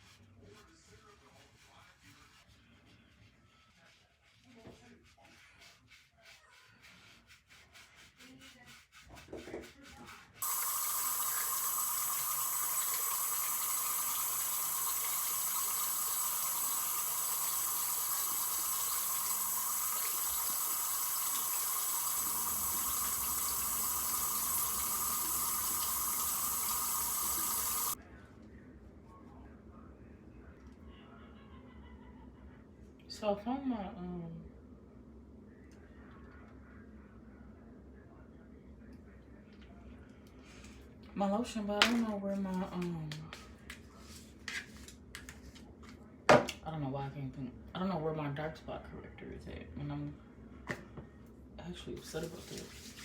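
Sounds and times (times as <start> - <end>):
tap water running: 10.4 - 28.0, 52.0 - 53.0.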